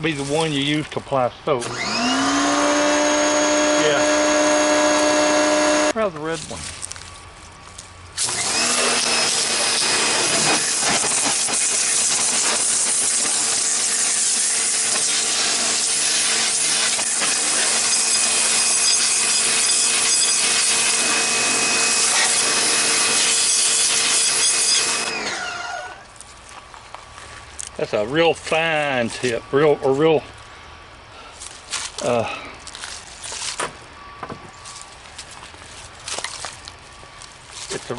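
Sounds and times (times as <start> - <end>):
pressure washer motor whine: 1.6 - 6.1, 8.2 - 26.1
high-pressure water jet hissing: 1.7 - 5.9, 8.2 - 25.4.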